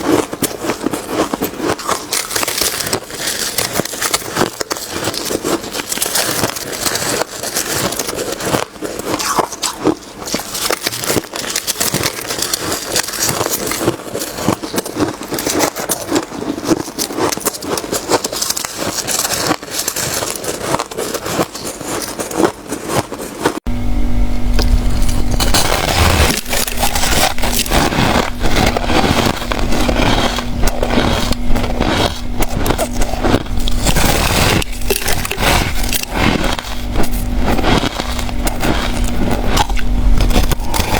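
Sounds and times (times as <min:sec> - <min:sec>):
chewing crunchy ice: 0:00.0 - 0:23.7, 0:24.5 - 0:40.9
steady low hum: 0:23.6 - 0:40.9.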